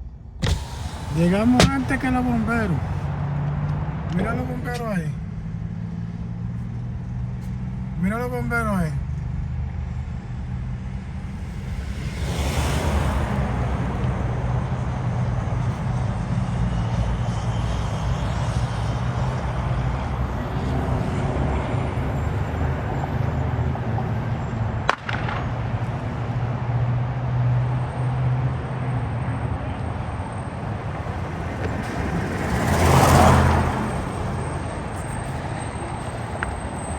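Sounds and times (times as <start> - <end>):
idling vehicle engines: 0.0 - 36.9
road traffic noise: 0.0 - 36.9
sharp click: 0.4 - 3.0.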